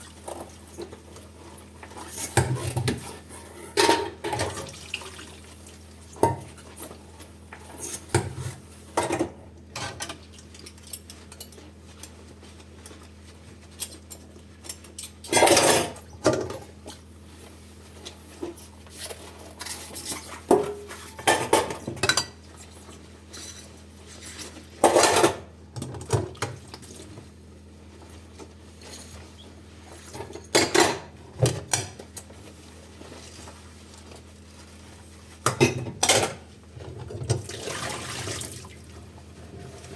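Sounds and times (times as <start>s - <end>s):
dishes and cutlery clattering: 3.7s - 4.6s.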